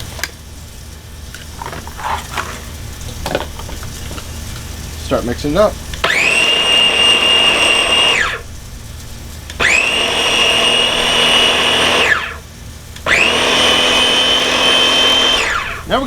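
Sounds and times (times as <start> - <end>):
food processor motor whining: 1.3 - 4.7, 5.9 - 8.5, 9.4 - 16.0.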